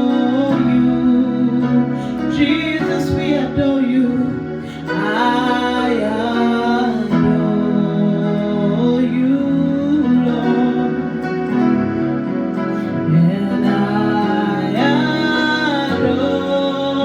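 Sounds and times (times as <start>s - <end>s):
instrumental accompaniment: 0.0s - 17.0s
long held sung notes: 12.7s - 17.0s.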